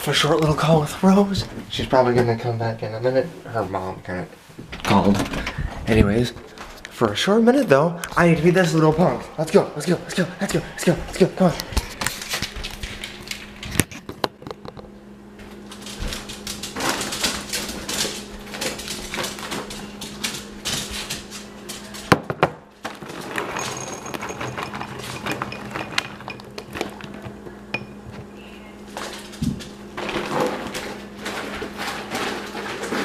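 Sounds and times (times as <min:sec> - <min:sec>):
steady low hum: 0:00.0 - 0:33.0
dog eating dry food from bowl: 0:23.0 - 0:27.4.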